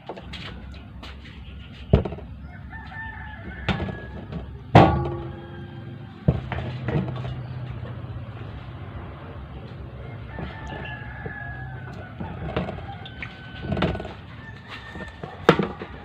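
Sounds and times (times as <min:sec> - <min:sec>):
rooster crowing: 0:02.3 - 0:06.8, 0:09.8 - 0:16.0
sharp knocks: 0:03.6 - 0:07.4.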